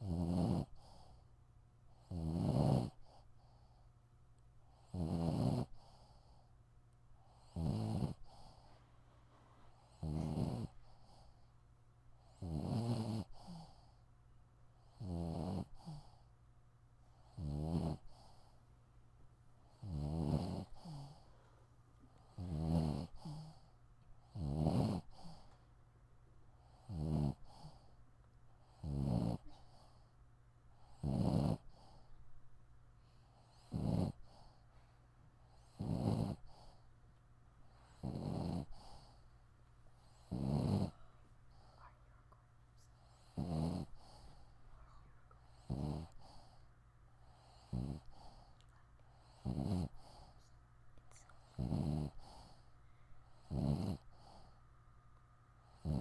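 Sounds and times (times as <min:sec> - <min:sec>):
dog snoring: 0:00.0 - 0:01.2, 0:01.9 - 0:03.8, 0:04.7 - 0:06.5, 0:07.2 - 0:08.8, 0:09.6 - 0:11.5, 0:12.2 - 0:14.0, 0:14.8 - 0:16.3, 0:17.1 - 0:18.6, 0:19.6 - 0:21.5, 0:22.1 - 0:25.6, 0:26.6 - 0:28.0, 0:28.6 - 0:30.1, 0:30.8 - 0:32.2, 0:33.1 - 0:34.6, 0:35.5 - 0:36.8, 0:37.7 - 0:39.3, 0:40.0 - 0:42.0, 0:42.9 - 0:54.6, 0:55.6 - 0:56.0.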